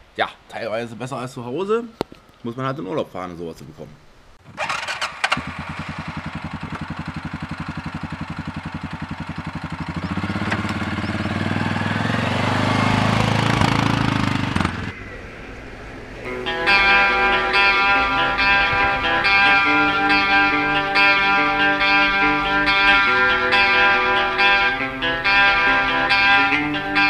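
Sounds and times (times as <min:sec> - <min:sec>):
atv engine starting and revving: 0:04.4 - 0:15.0.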